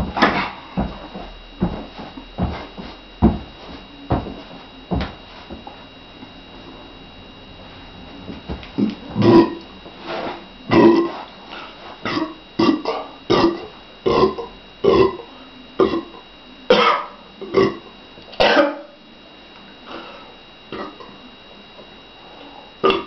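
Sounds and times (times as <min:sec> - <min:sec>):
woman burping: 0:09.2 - 0:09.6, 0:10.7 - 0:11.2, 0:12.0 - 0:18.9.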